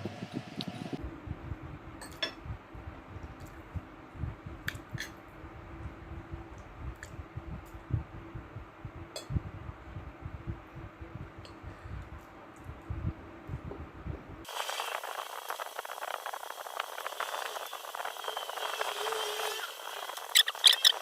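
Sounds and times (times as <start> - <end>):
dense crackling hiss: 14.5 - 21.0.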